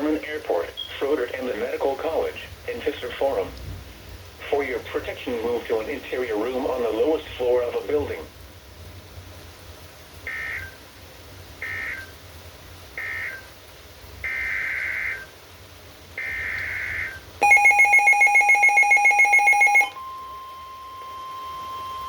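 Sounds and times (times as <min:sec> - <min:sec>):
rapidly pulsing alert tone: 0:17.4 - 0:20.0
raspy digital data bursts: 0:17.4 - 0:20.0
steady single-pitch warning tone: 0:17.4 - 0:22.0.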